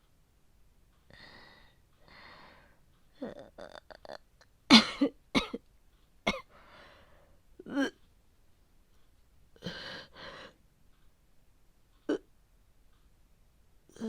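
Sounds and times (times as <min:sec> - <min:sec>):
catching throat sounds: 0:03.2 - 0:04.3, 0:12.0 - 0:12.3
woman coughing hard: 0:04.7 - 0:05.6, 0:06.3 - 0:06.5.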